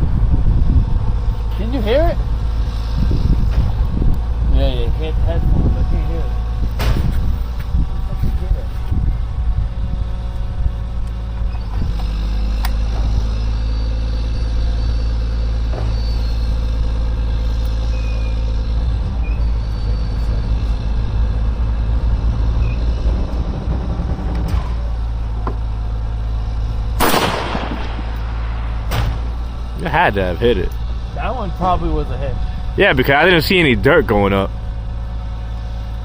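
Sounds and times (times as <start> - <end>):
low rumble: 0.0 - 36.0
rifle shot: 27.0 - 29.3.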